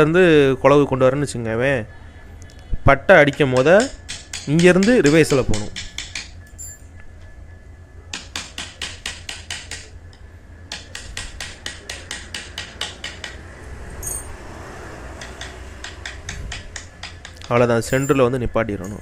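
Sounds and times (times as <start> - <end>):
mallet tapping chisel into wood: 3.3 - 6.4, 8.1 - 9.9, 10.7 - 13.4, 15.2 - 17.6.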